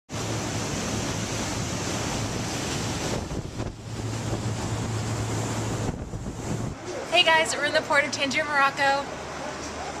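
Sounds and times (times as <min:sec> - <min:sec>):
wind buffeting microphone: 0:00.4 - 0:07.0.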